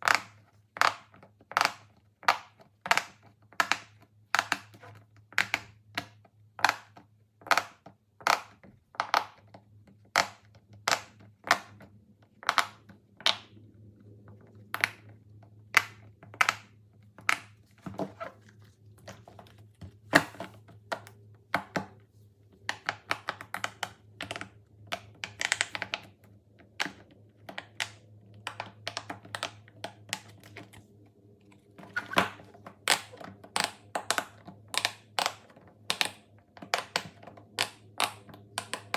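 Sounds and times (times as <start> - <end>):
faint low hum: 11.3 - 38.9.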